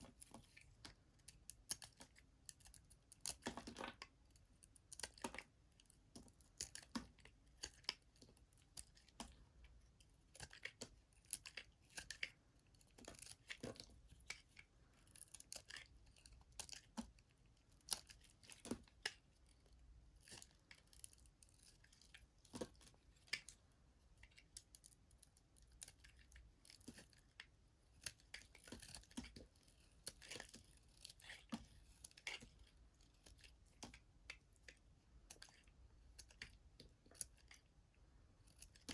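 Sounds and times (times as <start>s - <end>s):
knife cutting through soap: 25.6s - 37.6s.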